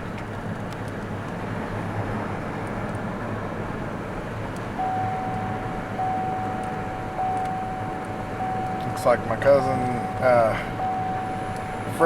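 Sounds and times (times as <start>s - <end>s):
road and engine noise in car: 0.0s - 12.0s
steady high tone: 4.8s - 12.0s.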